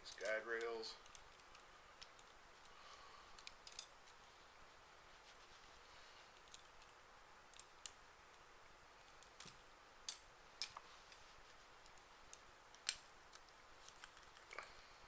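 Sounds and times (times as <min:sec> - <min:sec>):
small plastic parts clicking: 0:00.1 - 0:04.2, 0:06.4 - 0:08.4, 0:09.0 - 0:10.8, 0:11.8 - 0:14.6.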